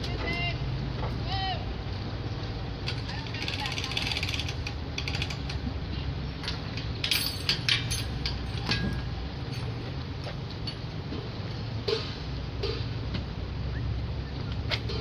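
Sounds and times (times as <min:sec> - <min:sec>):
metal clinking and rattling: 0:06.4 - 0:10.0.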